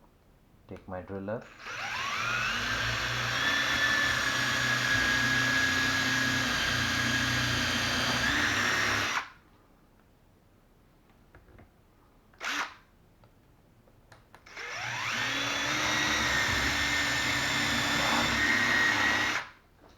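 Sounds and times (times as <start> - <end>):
electric drill boring into wood: 1.5 - 9.3, 12.4 - 12.8, 14.5 - 19.6.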